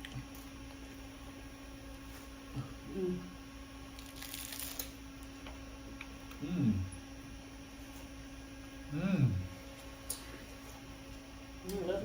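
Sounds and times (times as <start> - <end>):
crackly crunch of eating: 0.0 - 1.1, 3.9 - 6.4
low electrical hum: 0.0 - 12.0
person humming mm: 2.5 - 3.4, 6.3 - 7.0, 8.9 - 9.5.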